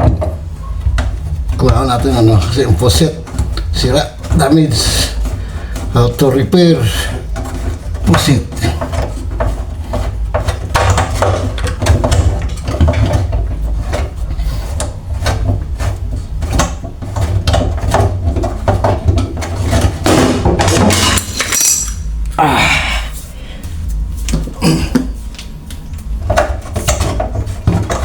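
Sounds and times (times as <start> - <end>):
tools clicking and rattling on metal: 15.2 - 22.4.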